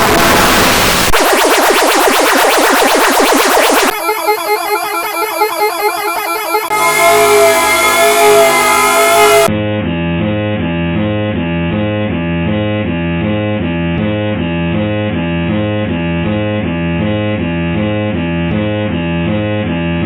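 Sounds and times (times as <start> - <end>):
muffled truck horn melody: 6.7 - 19.9.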